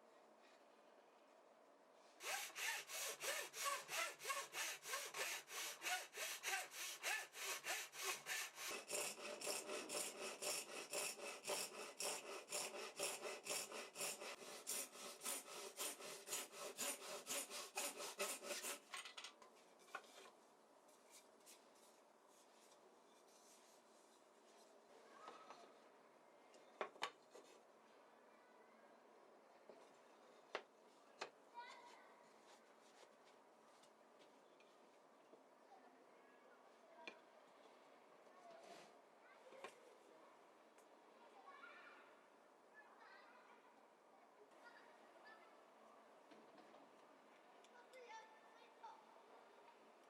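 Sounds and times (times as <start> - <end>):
hand saw cutting wood: 2.2 - 18.9.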